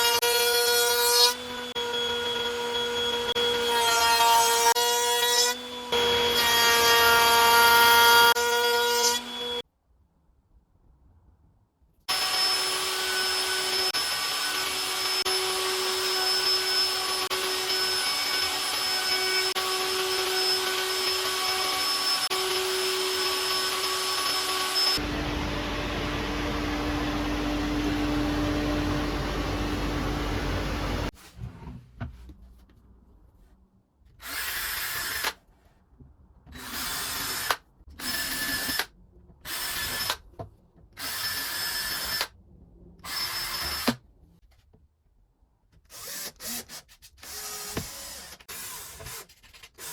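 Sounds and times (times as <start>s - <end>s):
power tool with high whine: 0.0s - 9.6s, 12.1s - 31.1s
lower-pitched power tool: 12.1s - 31.1s.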